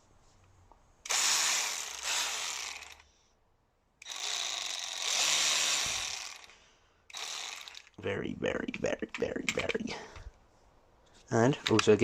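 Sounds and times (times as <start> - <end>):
cordless impact ratchet spinning: 1.1 - 3.1, 4.0 - 8.0.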